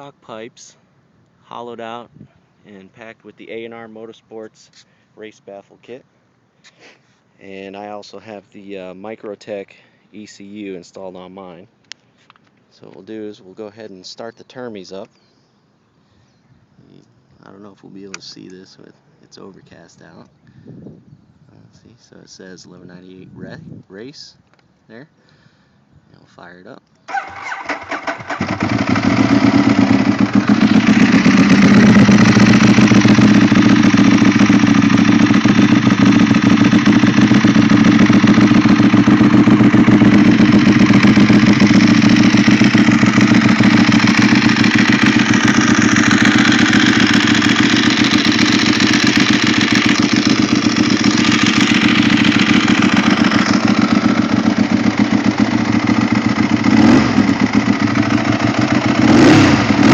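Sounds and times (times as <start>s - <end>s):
motorcycle engine idling: 27.1s - 59.9s.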